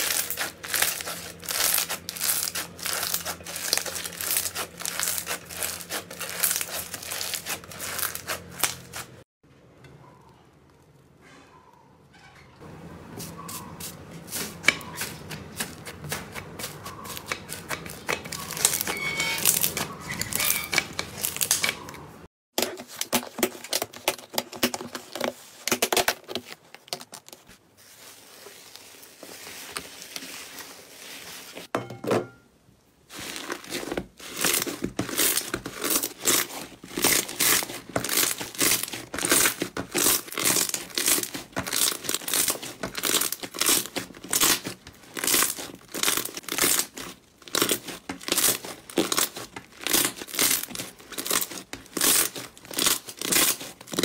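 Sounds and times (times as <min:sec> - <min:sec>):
slime crackling and popping: 0:00.0 - 0:09.2, 0:33.1 - 0:54.0.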